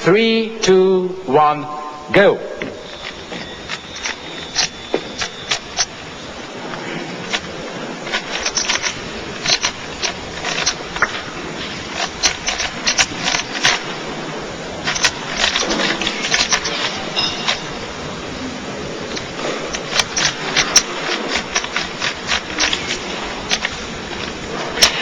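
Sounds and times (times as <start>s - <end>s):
low background noise: 0.0s - 25.0s
puzzle cube plastic clicks: 8.1s - 11.3s, 11.9s - 13.9s, 14.8s - 17.7s, 19.1s - 25.0s.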